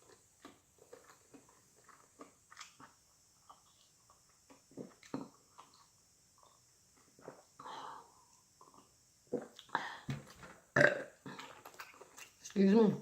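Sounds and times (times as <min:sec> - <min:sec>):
person chewing with mouth clicks: 0:00.0 - 0:06.6, 0:10.8 - 0:12.4
person breathing: 0:07.6 - 0:08.4, 0:09.7 - 0:10.2.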